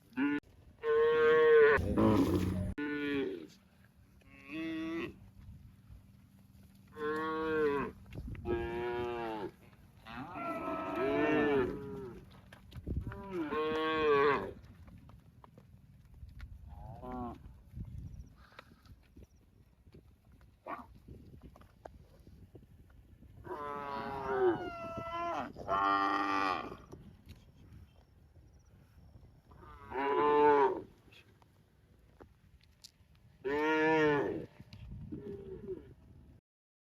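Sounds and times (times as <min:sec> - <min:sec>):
cattle mooing: 0:00.2 - 0:03.3, 0:07.0 - 0:12.2, 0:23.5 - 0:26.8.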